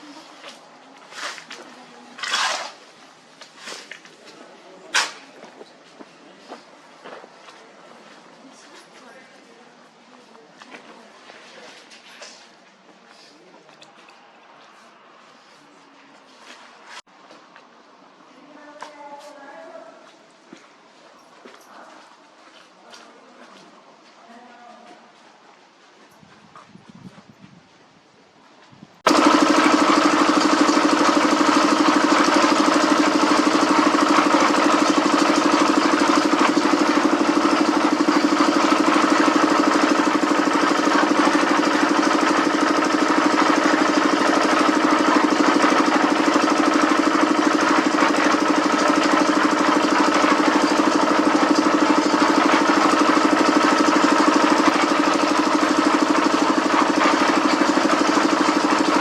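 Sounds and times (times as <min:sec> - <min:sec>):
machine engine droning: 0:29.1 - 0:59.0.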